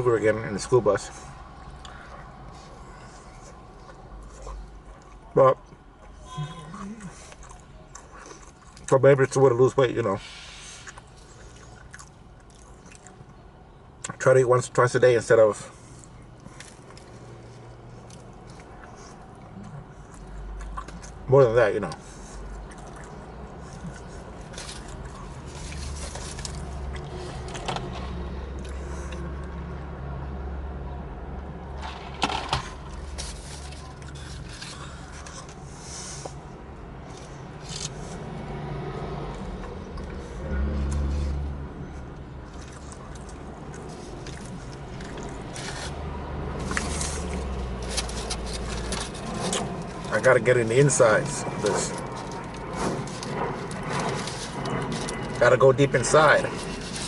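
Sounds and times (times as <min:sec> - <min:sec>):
low steady rumble: 0:00.0 - 0:57.0
steady low hum: 0:00.0 - 0:57.0
person chewing: 0:06.7 - 0:08.9, 0:10.8 - 0:13.4, 0:15.9 - 0:21.3, 0:22.3 - 0:29.6, 0:39.2 - 0:50.1
sandwich wrapper crackles: 0:23.7 - 0:27.9, 0:42.5 - 0:50.3, 0:51.6 - 0:55.4, 0:56.0 - 0:57.0.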